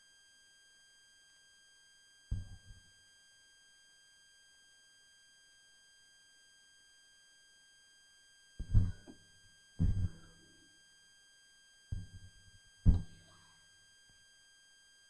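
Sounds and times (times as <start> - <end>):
dull low thumps: 8.6 - 9.1, 9.8 - 10.4, 12.0 - 12.2, 12.9 - 13.2.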